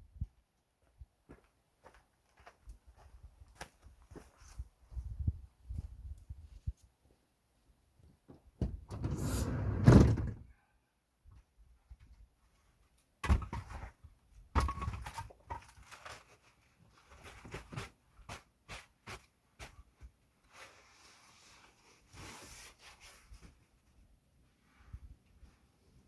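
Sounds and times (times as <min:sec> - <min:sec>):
soft rustle: 0:15.8 - 0:26.0.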